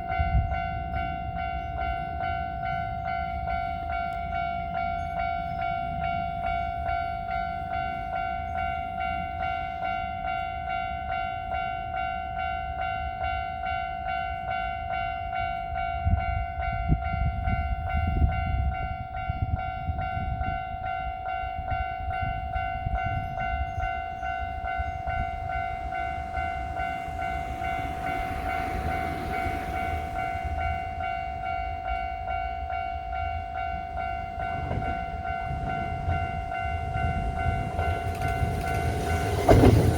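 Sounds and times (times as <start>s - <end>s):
train rumble and wheel knocks: 14.4s - 39.9s
rushing hiss of passing train: 24.3s - 32.0s, 34.2s - 39.9s.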